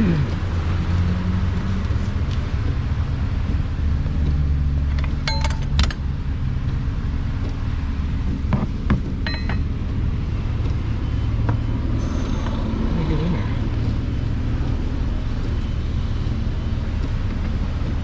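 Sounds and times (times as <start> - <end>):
car engine idling: 2.2 - 18.0
sharp metallic clinks: 5.2 - 5.9, 9.2 - 9.7.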